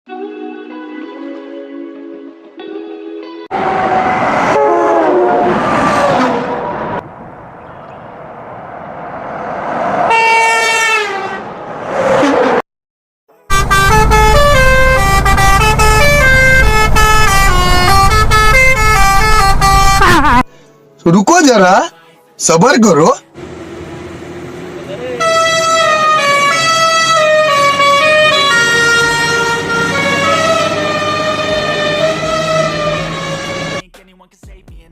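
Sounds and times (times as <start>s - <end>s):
multi-tone vehicle horn blaring: 3.5s - 6.4s, 10.1s - 11.4s, 13.4s - 20.5s, 24.8s - 33.8s.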